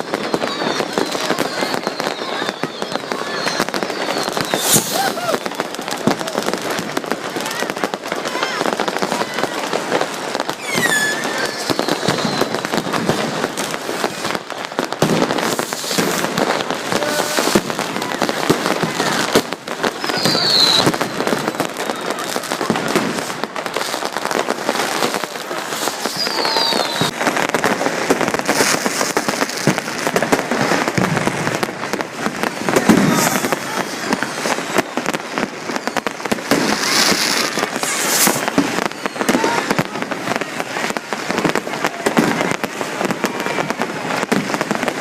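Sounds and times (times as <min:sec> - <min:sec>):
fireworks crackling and banging: 0:00.0 - 0:45.0
rocket falling whistles: 0:01.8 - 0:05.3, 0:10.6 - 0:12.7.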